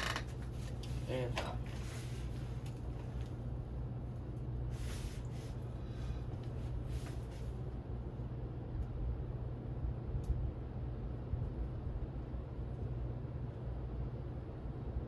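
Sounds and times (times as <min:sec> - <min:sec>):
ceiling fan motor hum: 0:00.0 - 0:15.0.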